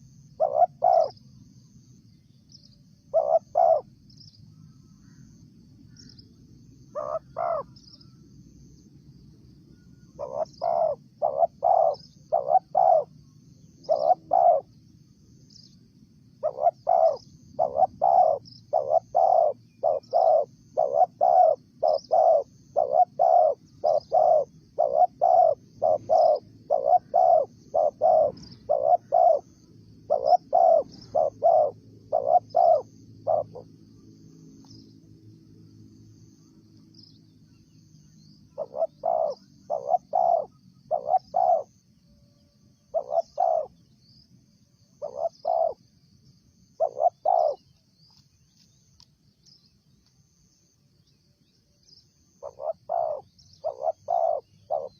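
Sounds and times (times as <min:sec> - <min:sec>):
dove cooing: 0:00.0 - 0:01.2, 0:03.1 - 0:04.0, 0:06.9 - 0:07.8, 0:10.0 - 0:14.8, 0:16.4 - 0:33.8, 0:38.5 - 0:41.8, 0:42.8 - 0:43.8, 0:44.9 - 0:45.8, 0:46.8 - 0:47.7, 0:52.4 - 0:54.9
faint high chirping: 0:00.0 - 0:54.9.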